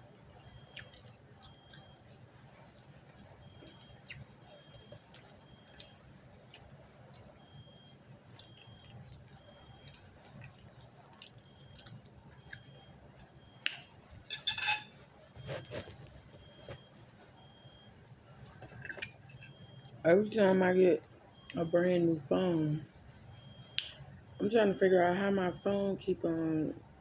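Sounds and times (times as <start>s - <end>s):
person chewing snack: 0.6s - 2.0s, 2.8s - 12.8s, 15.4s - 16.9s.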